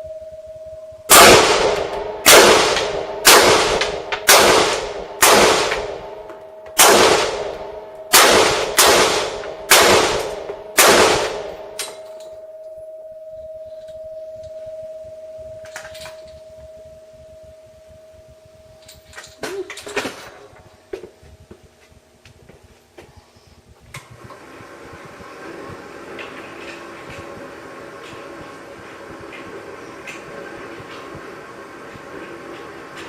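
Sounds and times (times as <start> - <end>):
rifle single shots: 1.1 - 6.2, 6.8 - 11.8.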